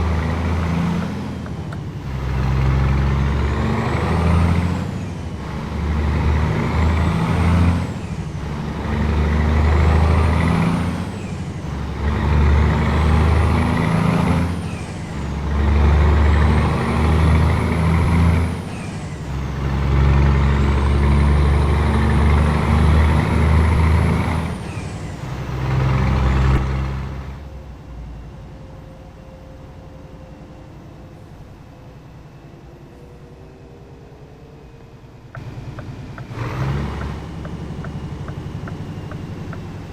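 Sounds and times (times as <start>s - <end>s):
diesel truck engine revving: 0.0s - 27.5s, 35.2s - 39.9s.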